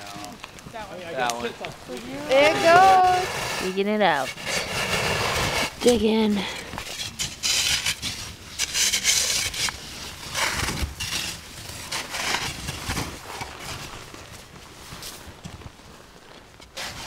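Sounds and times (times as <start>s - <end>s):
scraping and crunching snow: 0.0s - 17.0s.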